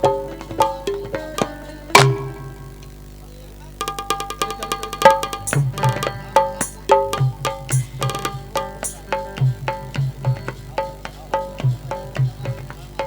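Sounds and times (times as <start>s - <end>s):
tabla hand drums: 0.0s - 2.8s, 3.8s - 13.0s
repeated instrumental melody: 3.8s - 9.3s.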